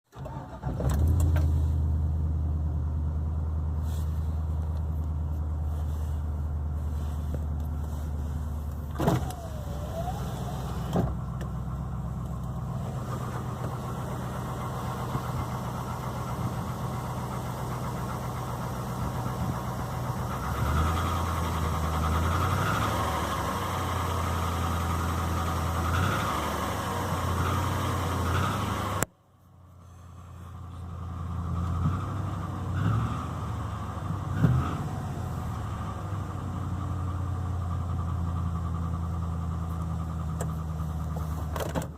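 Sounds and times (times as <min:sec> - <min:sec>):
engine running with deep knock: 0:12.2 - 0:22.2.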